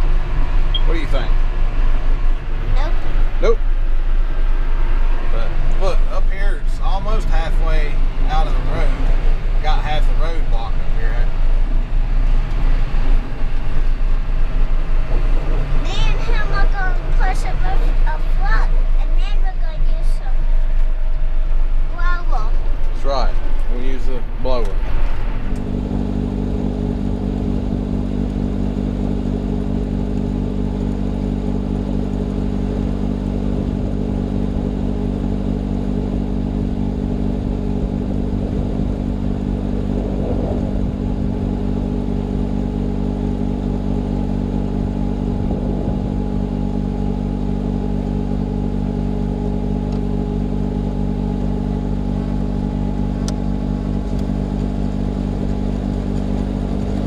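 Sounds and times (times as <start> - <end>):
tractor diesel engine running: 25.3 - 57.0.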